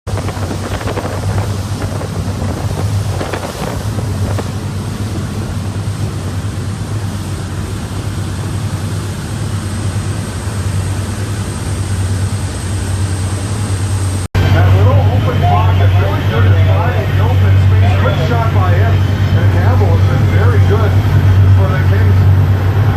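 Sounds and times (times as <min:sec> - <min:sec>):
boat engine humming: 0:00.0 - 0:22.9
wind noise on microphone: 0:00.1 - 0:08.8.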